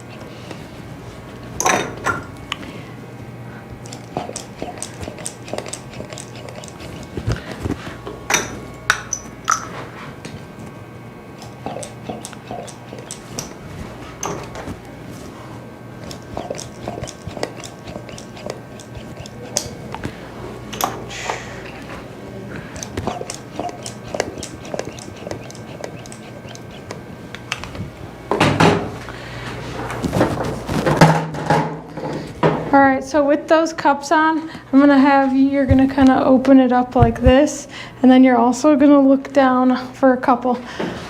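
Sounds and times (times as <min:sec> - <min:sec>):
cups clicking and clinking: 0:01.6 - 0:02.6, 0:08.0 - 0:09.7.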